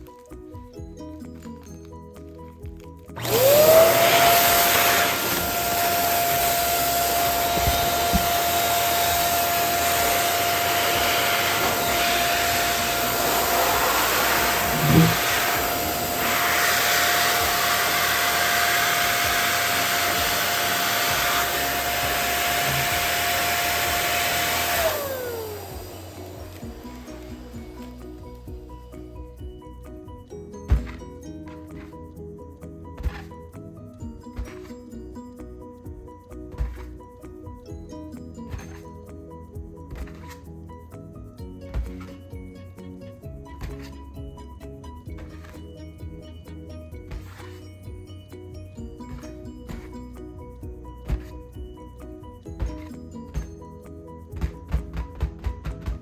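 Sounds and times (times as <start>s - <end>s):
air rushing: 3.2s - 28.2s
balloon inflator motor whine: 3.2s - 28.7s.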